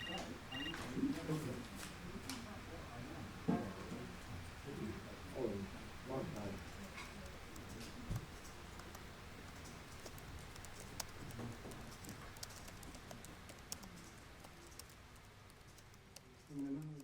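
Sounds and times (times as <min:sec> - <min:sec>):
faint room noise: 0:00.0 - 0:17.0
computer keyboard typing: 0:06.3 - 0:17.0.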